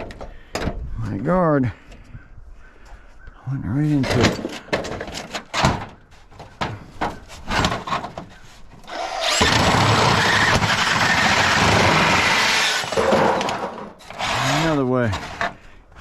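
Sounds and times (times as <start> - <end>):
metal knocks and clanks: 3.9 - 8.4
angle grinder cutting metal: 8.9 - 15.4.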